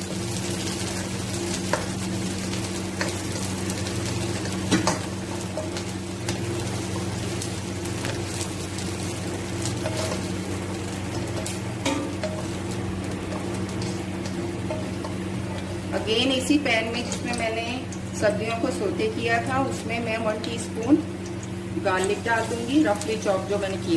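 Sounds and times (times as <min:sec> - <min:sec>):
vegetables sizzling in oil: 0:00.0 - 0:23.9
utensil scraping pan: 0:09.6 - 0:15.9.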